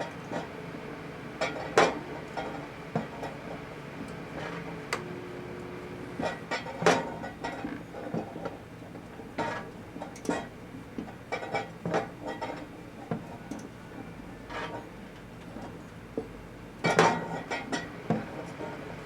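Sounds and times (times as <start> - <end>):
microwave oven humming: 0.0 - 19.0.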